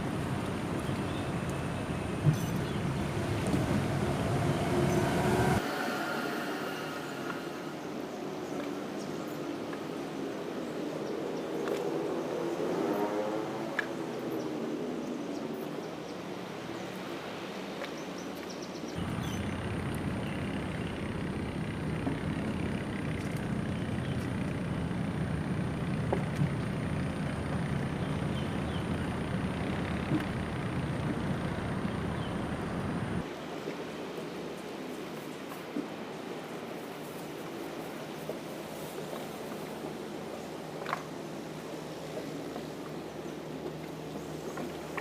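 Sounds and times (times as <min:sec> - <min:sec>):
traffic rumble on bridge: 0:00.0 - 0:10.2, 0:18.9 - 0:33.4.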